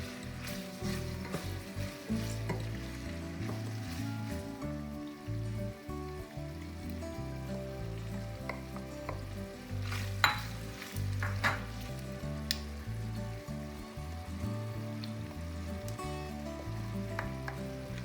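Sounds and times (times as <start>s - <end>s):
background music: 0.0s - 18.0s
food sizzling in a pan: 0.0s - 18.0s
utensil clinking against pan: 9.9s - 11.8s.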